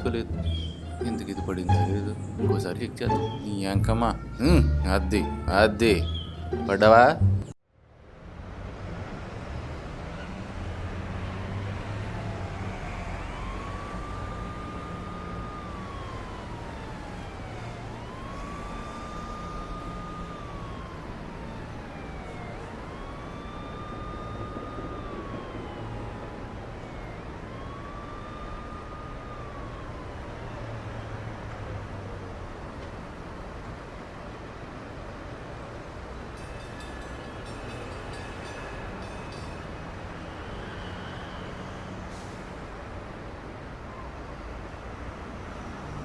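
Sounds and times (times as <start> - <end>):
siren wailing: 0.0 - 7.5, 11.8 - 31.6
vehicle noise: 0.0 - 46.0.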